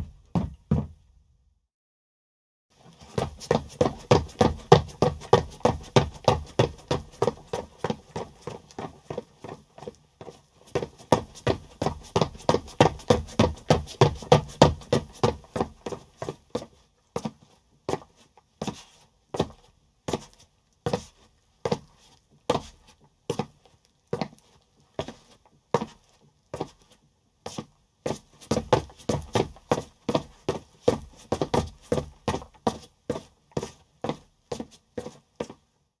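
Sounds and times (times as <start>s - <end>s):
footsteps of person running: 3.0s - 16.4s, 28.1s - 35.6s.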